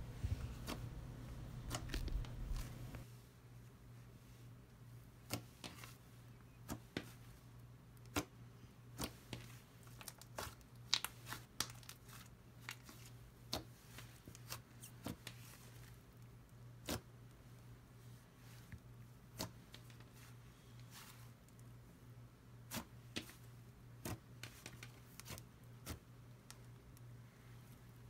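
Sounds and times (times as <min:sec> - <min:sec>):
steady low hum: 0:00.0 - 0:03.9.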